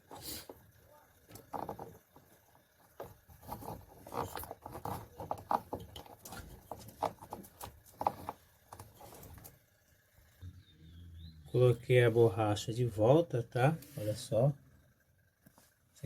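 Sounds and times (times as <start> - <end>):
hands fitting rubber belt: 3.0 - 9.6.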